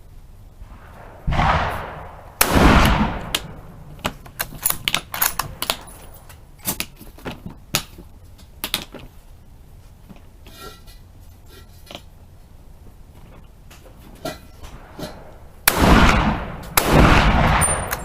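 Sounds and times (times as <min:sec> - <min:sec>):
rifle shots: 0:00.7 - 0:06.2, 0:15.6 - 0:18.0
sharp clicks and knocks: 0:03.2 - 0:09.1.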